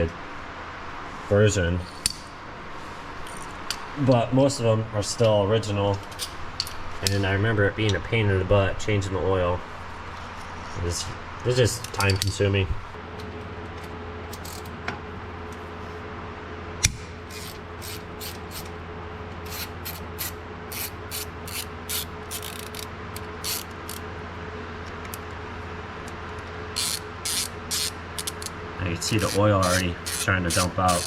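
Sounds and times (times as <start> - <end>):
steady low hum: 0.0 - 31.0
hand tools clicking and scraping: 17.3 - 18.8, 19.4 - 24.0, 26.8 - 31.0.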